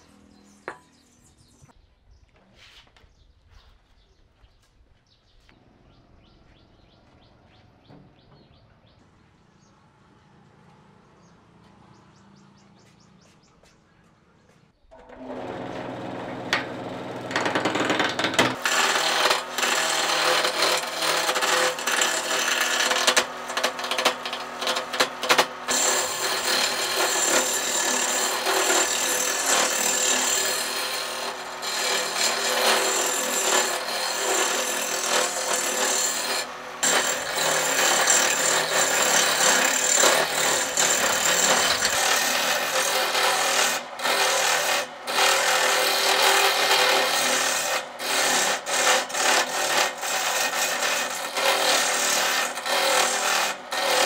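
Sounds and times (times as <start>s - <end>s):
tool scraping spinning wood: 14.9s - 54.0s
wood lathe motor humming: 14.9s - 54.0s.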